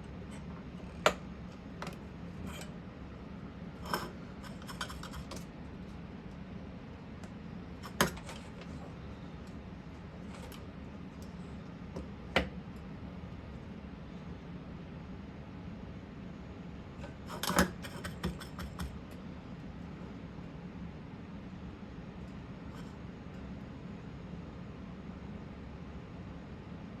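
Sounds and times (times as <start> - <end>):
steady low hum: 0.0 - 27.0
tools clicking on workbench: 7.8 - 8.5, 17.0 - 19.1.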